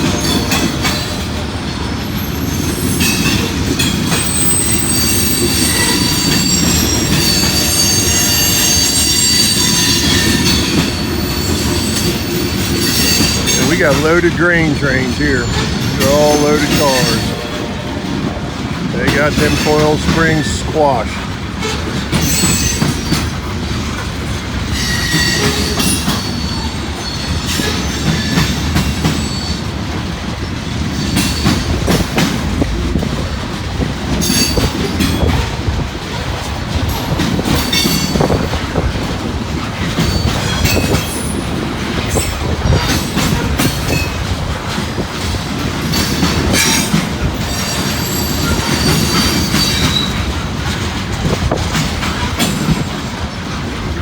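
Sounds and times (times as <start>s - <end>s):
train wheels rumbling on rail: 0.0s - 54.0s
wheel squeals: 2.0s - 14.0s, 21.6s - 23.5s, 24.7s - 29.7s, 39.9s - 44.2s, 45.8s - 50.8s.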